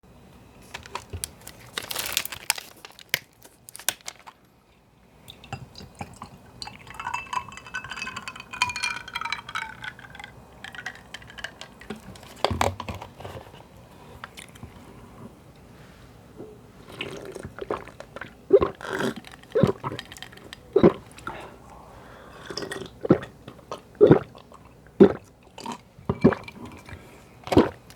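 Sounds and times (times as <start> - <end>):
juice gurgling into glass: 5.3 - 11.4, 16.9 - 21.3, 22.4 - 27.9.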